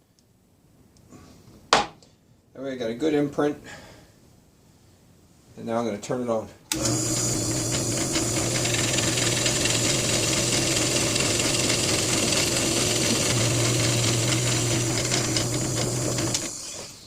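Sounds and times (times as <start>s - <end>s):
power tool motor running: 6.7s - 17.0s.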